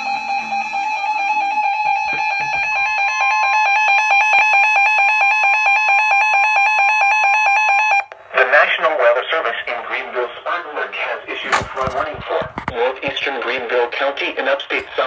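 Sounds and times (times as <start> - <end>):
shrill two-tone alert tone: 0.0 - 8.0.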